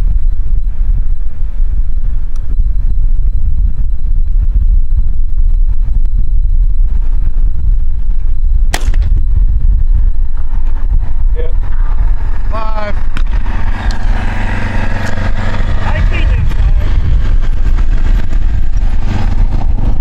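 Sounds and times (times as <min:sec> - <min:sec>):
wind buffeting microphone: 0:00.0 - 0:20.0
rifle shot: 0:08.7 - 0:09.3.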